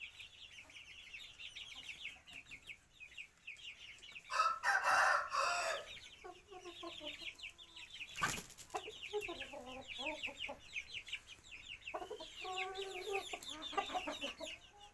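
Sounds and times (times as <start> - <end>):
chickens clucking: 0.0 - 14.9
rooster crowing: 4.3 - 5.9.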